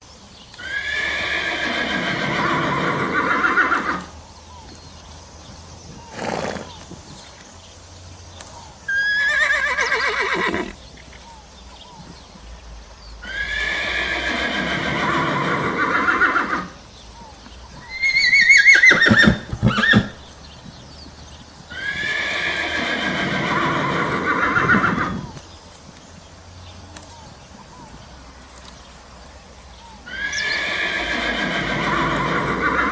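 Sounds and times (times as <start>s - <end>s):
horse neighing: 0.6s - 4.1s, 6.0s - 6.7s, 8.9s - 10.8s, 13.2s - 16.8s, 17.8s - 20.2s, 21.7s - 25.4s, 30.1s - 32.9s.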